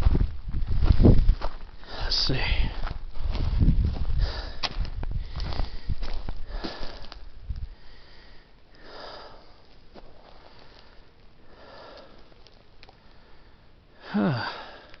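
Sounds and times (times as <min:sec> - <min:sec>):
footsteps: 0:00.0 - 0:07.7, 0:09.6 - 0:11.1
person breathing heavily: 0:01.8 - 0:15.0.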